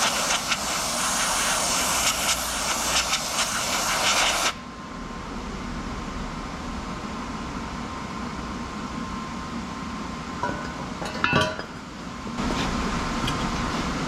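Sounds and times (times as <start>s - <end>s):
pressurised spray hissing: 0.0s - 4.6s
steady background hum: 0.0s - 14.0s.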